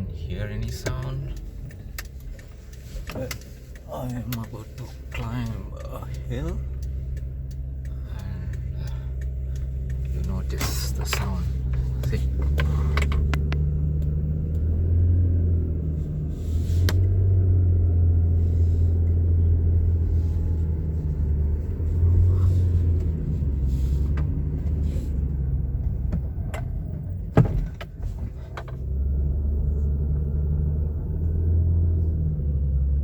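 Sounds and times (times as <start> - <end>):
engine low drone: 0.0 - 33.0
sharp clicks: 0.6 - 14.8.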